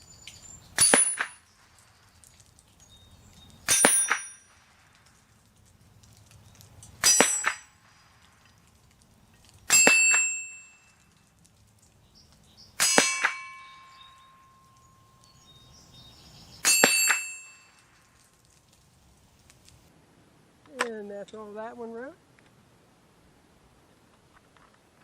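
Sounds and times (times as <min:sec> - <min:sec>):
steel target ringing clang: 0:00.8 - 0:01.5, 0:03.7 - 0:04.6, 0:07.0 - 0:07.8, 0:09.7 - 0:10.9, 0:12.8 - 0:15.0, 0:16.6 - 0:17.9.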